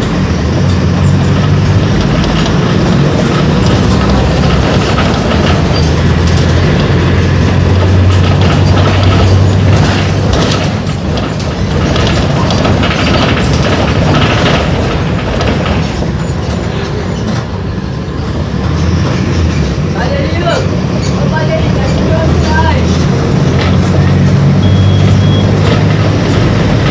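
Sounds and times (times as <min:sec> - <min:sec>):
bus body rattling: 0:00.0 - 0:26.9
bus diesel engine running: 0:00.0 - 0:26.9.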